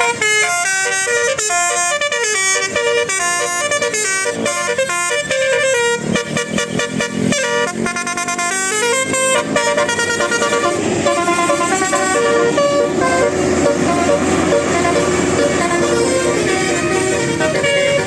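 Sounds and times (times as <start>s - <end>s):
musical air horn tune: 0.0s - 18.0s
rushing noise: 7.0s - 18.0s.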